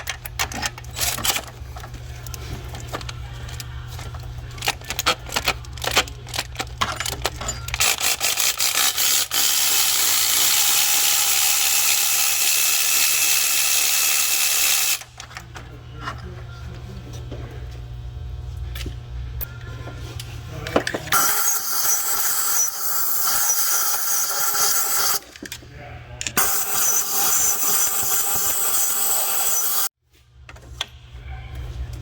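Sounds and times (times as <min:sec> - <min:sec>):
hand tools clicking and rattling: 0:02.2 - 0:10.8.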